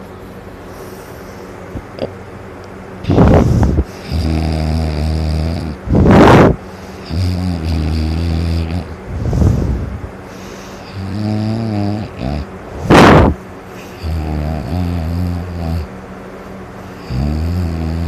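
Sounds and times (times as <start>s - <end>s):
dog snoring loudly: 3.0s - 16.0s, 16.8s - 18.0s.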